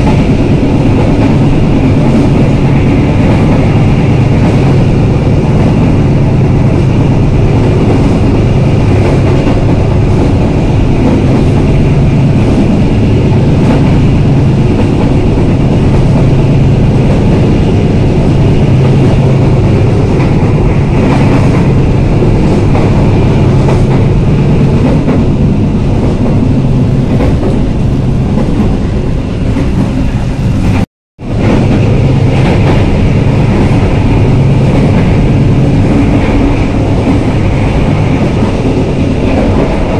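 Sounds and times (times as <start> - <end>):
train wheels rumbling on rails: 0.0 - 39.9.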